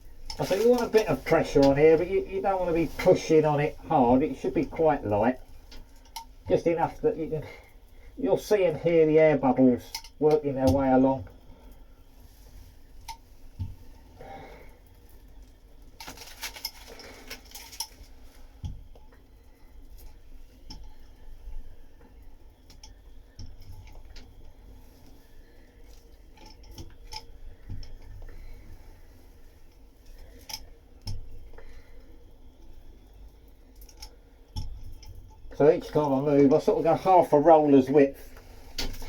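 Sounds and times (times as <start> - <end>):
air bubbles clicking and crackling: 0.0 - 11.8.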